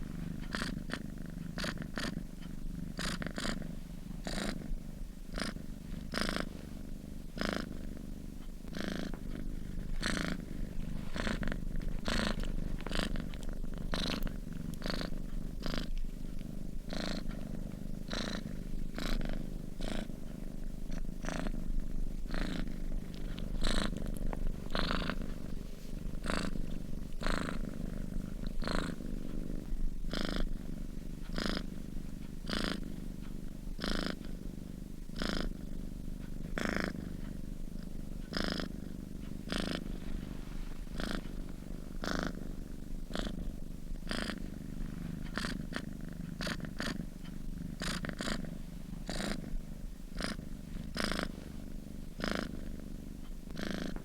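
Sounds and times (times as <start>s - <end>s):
cat purring: 0.0s - 54.0s.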